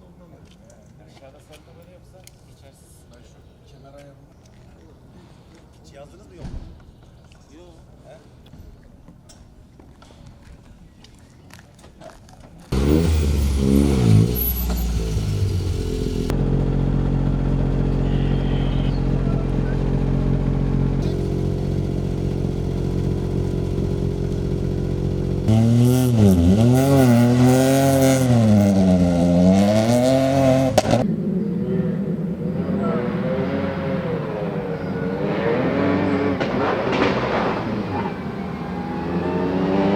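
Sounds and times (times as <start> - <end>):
car engine revving: 12.7 - 39.9.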